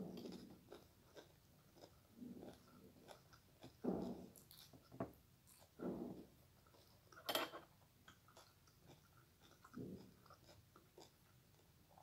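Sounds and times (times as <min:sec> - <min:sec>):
person chewing food: 0:00.0 - 0:12.0.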